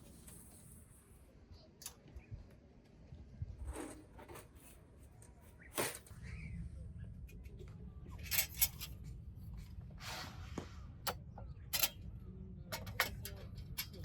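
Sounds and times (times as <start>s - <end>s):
steady low rumble: 6.2s - 14.0s.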